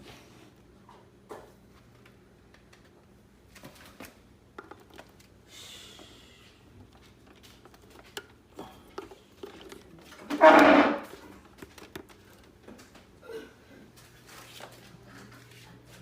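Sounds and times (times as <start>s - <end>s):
faint clicks and taps: 3.6s - 5.3s, 11.4s - 13.1s.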